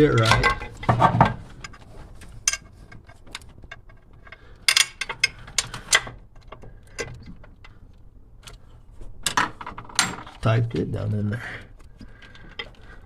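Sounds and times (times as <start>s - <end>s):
metal clicks and knocks: 0.0s - 8.6s, 9.2s - 10.5s.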